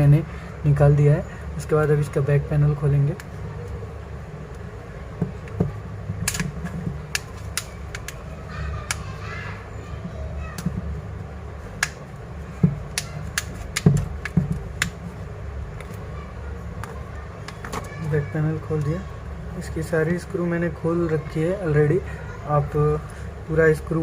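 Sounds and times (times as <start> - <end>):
steady low hum: 0.0 - 24.0
plastic clips clicking and snapping: 6.2 - 6.5, 7.1 - 8.2.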